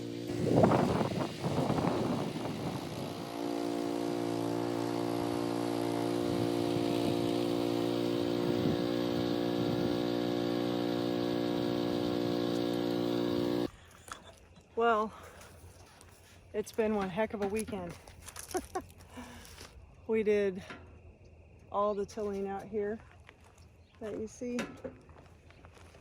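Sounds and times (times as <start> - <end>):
rototiller engine running: 0.0 - 13.7.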